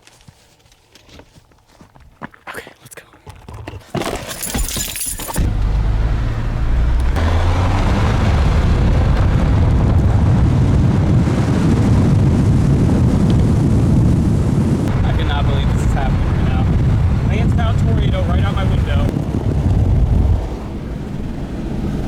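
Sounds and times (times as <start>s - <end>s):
rattling clatter: 3.4s - 5.8s
car engine and road rumble: 3.8s - 22.0s.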